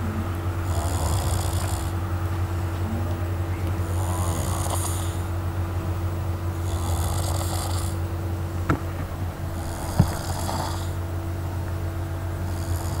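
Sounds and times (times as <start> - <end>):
steady low hum: 0.0 - 13.0
person snoring: 0.6 - 2.0, 3.8 - 5.3, 6.6 - 8.0, 9.6 - 11.0, 12.4 - 13.0.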